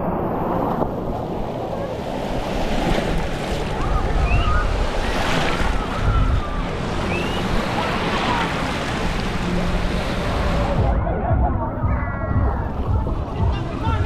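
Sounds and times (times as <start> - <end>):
rushing water: 0.0 - 11.0
wind buffeting microphone: 0.0 - 14.0.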